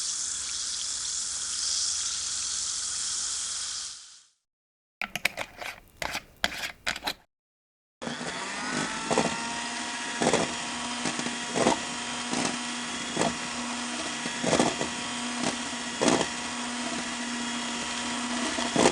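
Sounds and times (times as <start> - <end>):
contents knocking in bowl: 5.0 - 7.2
food processor motor hum: 8.0 - 18.9.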